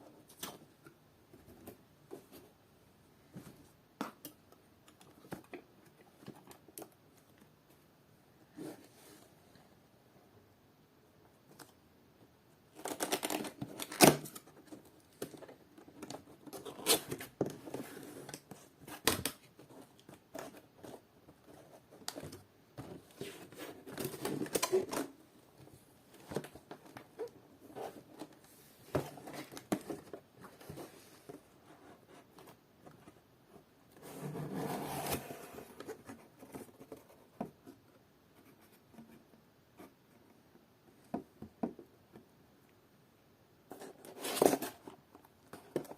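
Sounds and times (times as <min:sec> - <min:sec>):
packaging rustling and scraping: 0:43.7 - 0:45.0.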